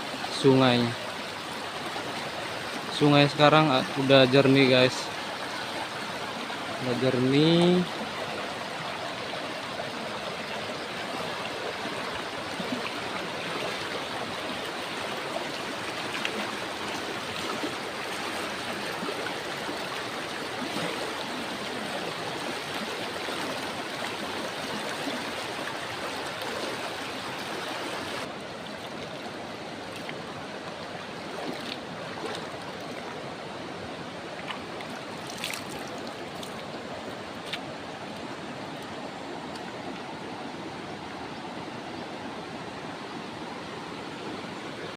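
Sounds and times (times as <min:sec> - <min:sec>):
river water rushing: 0:00.0 - 0:44.9.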